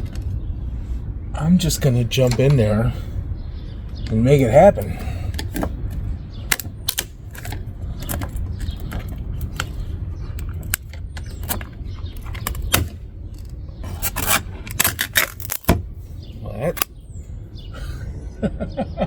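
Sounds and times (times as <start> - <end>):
steady low rumble: 0.0 - 19.0
hand tools clicking and scraping: 4.8 - 15.9.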